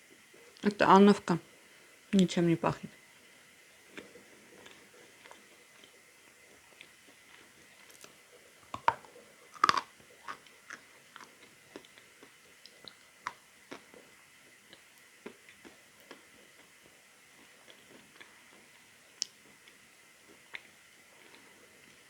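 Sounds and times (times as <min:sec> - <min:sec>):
chalk crunching while chewed: 0:06.8 - 0:14.0.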